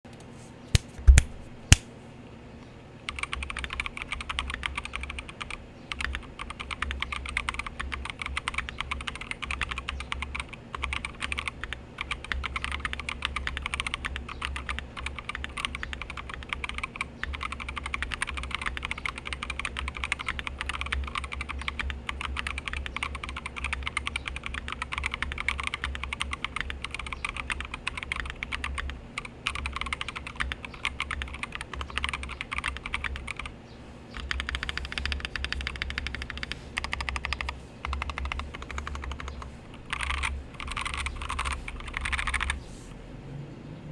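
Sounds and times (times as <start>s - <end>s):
sharp single clicks: 0.1s - 1.9s
fast mechanical keyboard typing: 3.1s - 33.5s, 34.2s - 42.6s.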